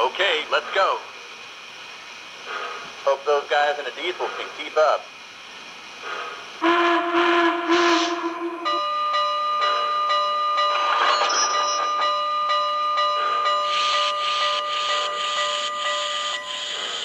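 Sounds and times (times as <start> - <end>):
steam hiss: 0.0 - 6.8, 7.6 - 8.8, 13.1 - 17.0
model train steam whistle: 6.6 - 10.0.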